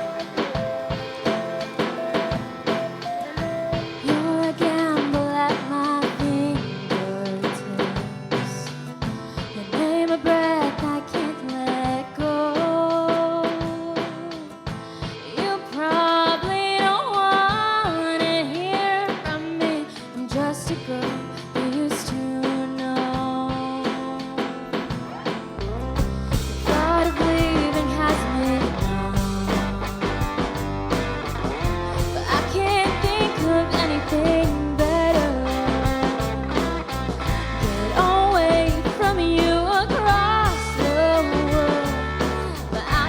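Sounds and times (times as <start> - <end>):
sliding lead melody: 0.0 - 5.0
pop-rock song on drums and guitar: 0.0 - 43.0.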